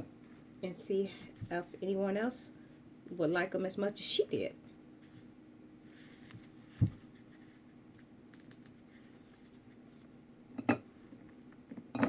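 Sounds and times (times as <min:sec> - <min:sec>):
faint steady hum: 0:00.0 - 0:12.0
dull thump on tabletop: 0:06.8 - 0:07.0.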